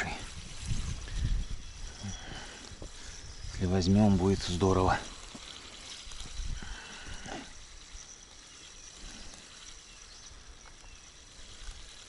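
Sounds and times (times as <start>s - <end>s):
wind buffeting microphone: 0.0s - 8.0s.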